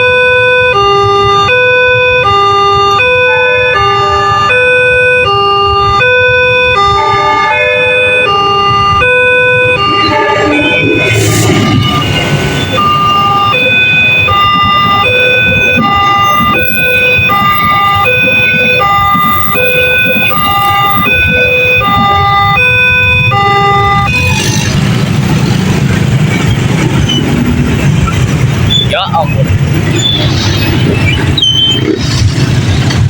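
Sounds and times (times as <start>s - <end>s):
crossing siren electronic tones: 0.0s - 33.0s
vehicle rumble: 8.3s - 33.0s.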